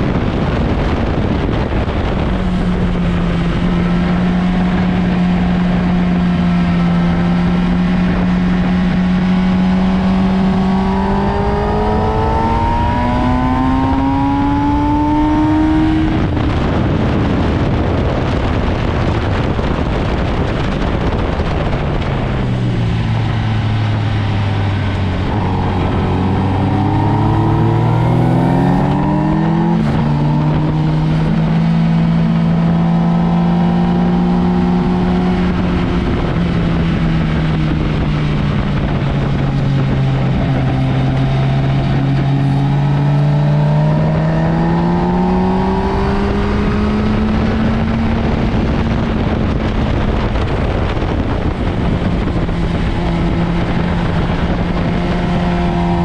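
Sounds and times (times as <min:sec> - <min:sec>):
motorcycle engine revving: 0:00.0 - 0:56.0
rushing noise: 0:10.9 - 0:35.0.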